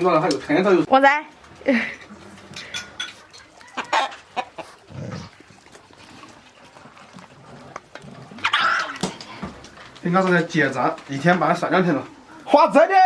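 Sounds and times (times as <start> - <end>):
chickens clucking: 1.9 - 6.7.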